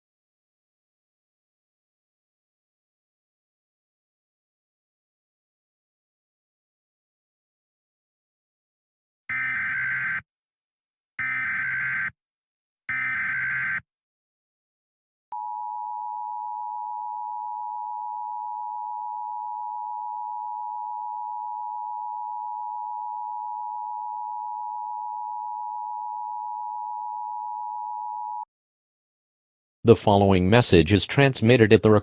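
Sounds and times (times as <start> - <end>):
steady electronic alarm tone: 9.3 - 10.3, 11.2 - 12.2, 12.9 - 13.9, 15.4 - 28.5.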